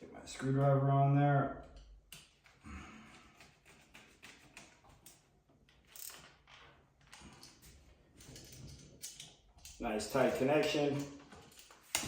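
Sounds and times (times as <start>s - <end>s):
screwdriver clicks and scrapes on metal: 7.0s - 9.8s.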